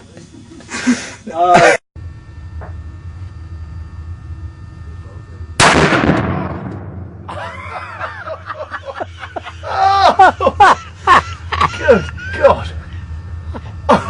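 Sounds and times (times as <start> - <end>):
gunshot with echo: 5.6 - 7.2
voices crying out: 7.3 - 13.0.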